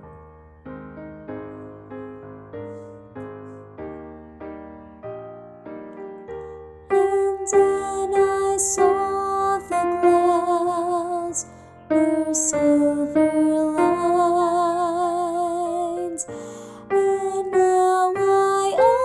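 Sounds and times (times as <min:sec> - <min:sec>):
piano chords: 0:00.0 - 0:19.0
soprano singing with vibrato: 0:06.9 - 0:19.0.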